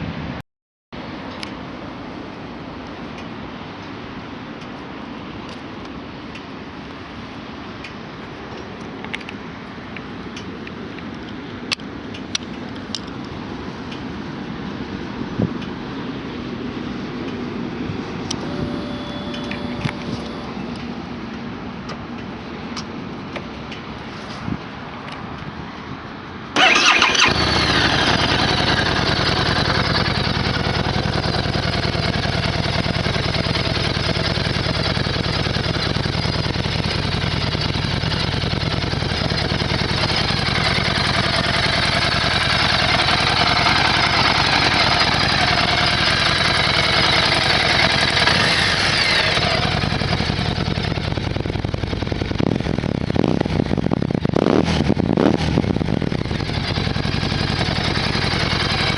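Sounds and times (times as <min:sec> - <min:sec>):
motorcycle engine starting and idling: 0:18.3 - 0:20.8, 0:26.6 - 0:58.9.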